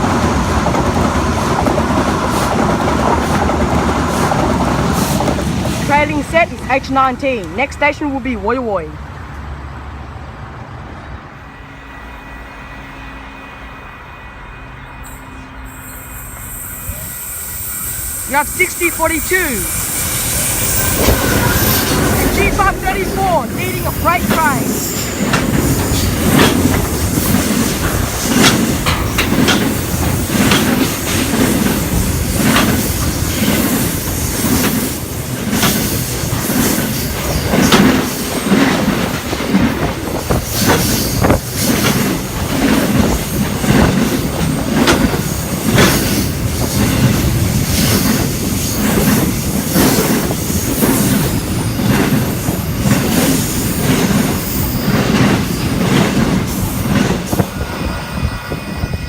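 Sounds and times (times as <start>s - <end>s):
freight train rumbling: 0.0s - 59.0s
wheels clicking over rail joints: 21.0s - 57.4s.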